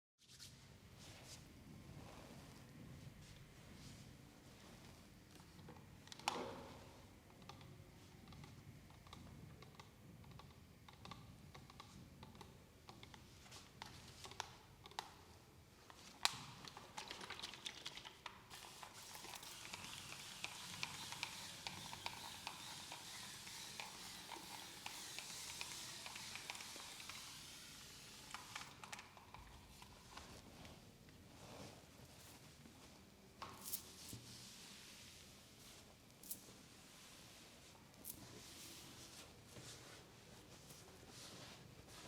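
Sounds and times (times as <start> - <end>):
soft handling clicks and scratches: 4.6 - 34.6.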